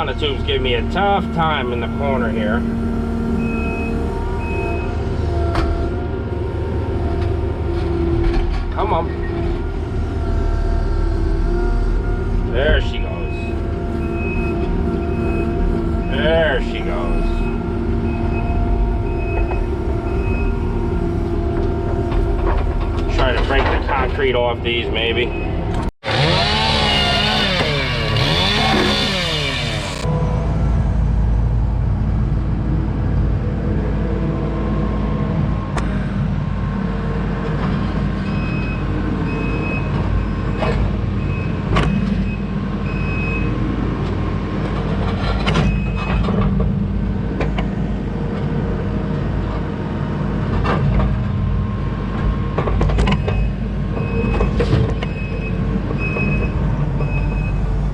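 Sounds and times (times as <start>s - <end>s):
diesel engine running hard: 0.0s - 57.9s
backup alarm beeps: 3.4s - 4.9s.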